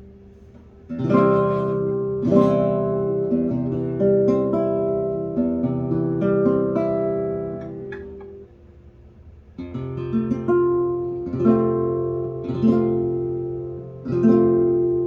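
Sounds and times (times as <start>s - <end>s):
guitar strummed chords: 0.9s - 8.4s, 9.6s - 15.0s.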